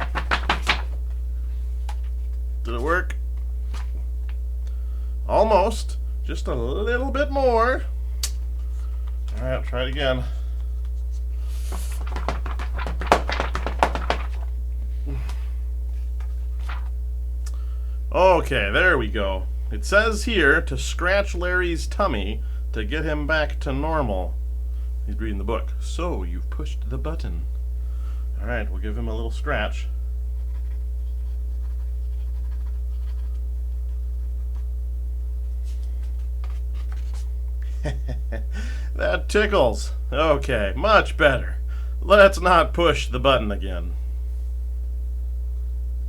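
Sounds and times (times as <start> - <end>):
fingers scratching paper page: 0.0 - 1.0, 11.6 - 14.5, 30.4 - 33.4
book shaken knocking: 0.0 - 1.2, 11.6 - 14.5
low electrical hum: 0.0 - 46.0.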